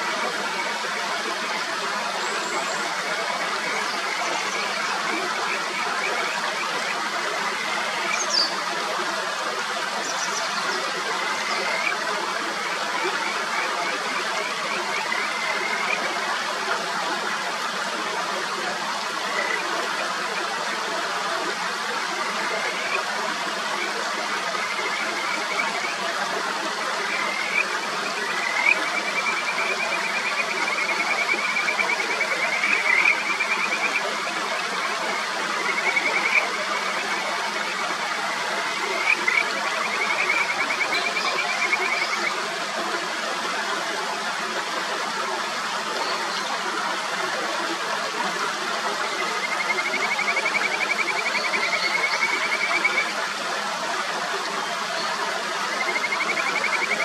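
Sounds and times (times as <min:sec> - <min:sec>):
mountain stream rushing: 0:00.0 - 0:57.0
frogs calling with whistled trills: 0:02.3 - 0:08.7, 0:10.0 - 0:16.2, 0:23.7 - 0:26.2, 0:26.8 - 0:42.4, 0:49.0 - 0:53.2, 0:55.6 - 0:57.0.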